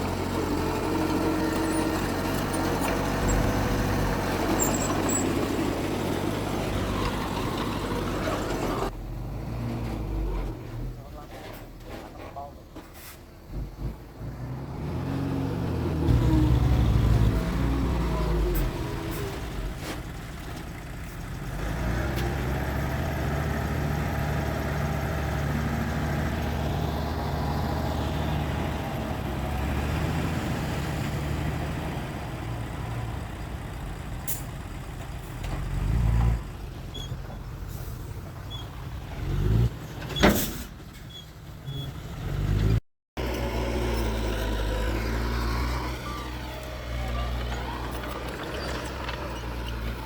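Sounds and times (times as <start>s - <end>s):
heavy diesel engines running: 0.0s - 9.0s.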